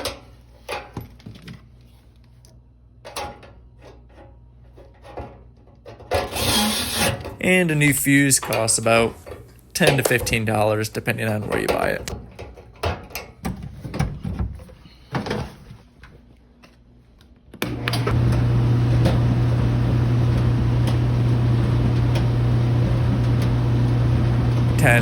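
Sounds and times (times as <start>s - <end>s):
clothes dryer running: 6.2s - 12.2s, 17.6s - 25.0s.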